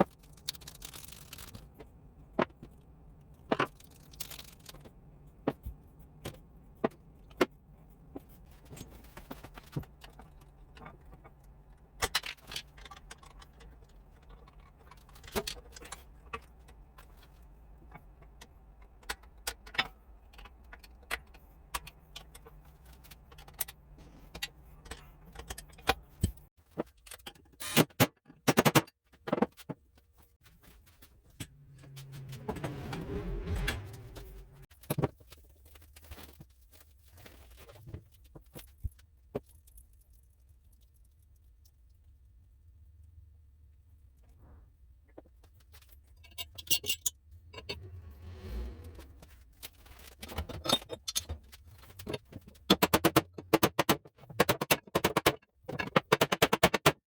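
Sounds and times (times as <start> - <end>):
metal parts and tools clinking: 45.8 - 48.0, 49.6 - 56.0.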